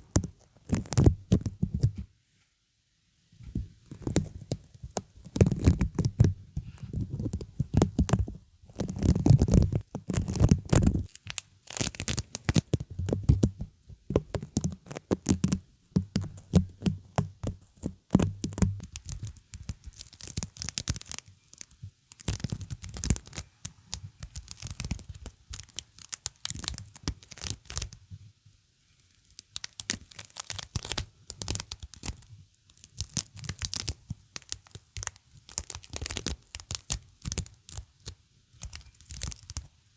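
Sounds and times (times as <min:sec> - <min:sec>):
sticky surface peeling crackle: 0:05.2 - 0:13.4, 0:29.3 - 0:32.2.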